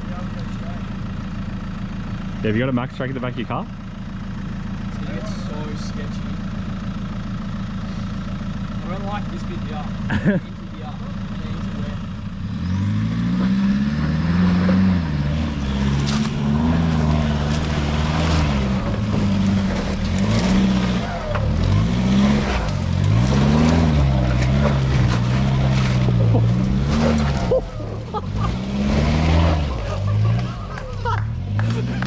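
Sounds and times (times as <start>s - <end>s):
engine revving hard: 12.4s - 32.0s.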